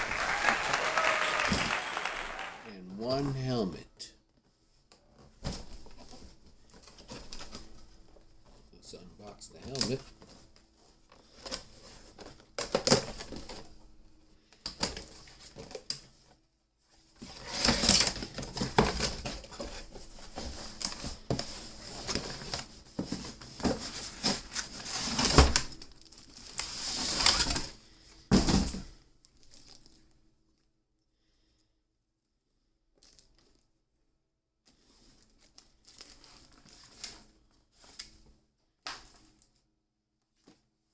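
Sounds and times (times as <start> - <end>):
cardboard and packaging rustling: 9.5 - 13.9, 17.0 - 30.1, 34.7 - 38.4.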